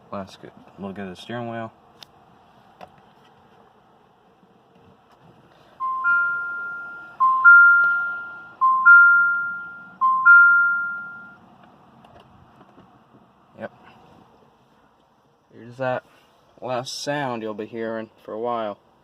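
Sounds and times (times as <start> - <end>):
two-note dashboard chime: 5.8 - 11.4.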